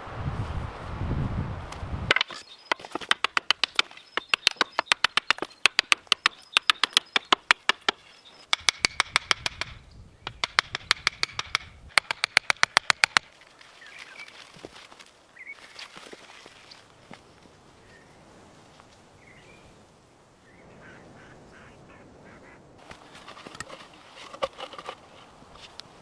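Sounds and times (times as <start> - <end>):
tool striking wood: 2.1 - 13.3.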